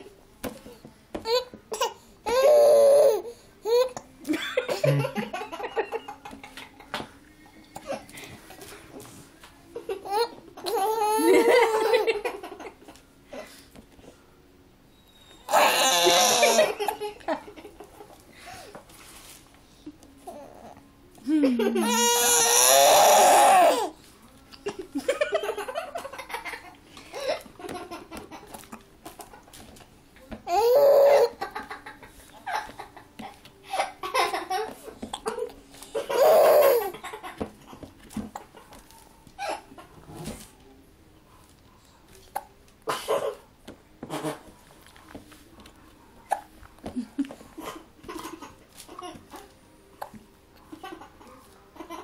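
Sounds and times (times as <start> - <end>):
child laughing: 9.9 - 12.3
child squealing: 15.5 - 16.7.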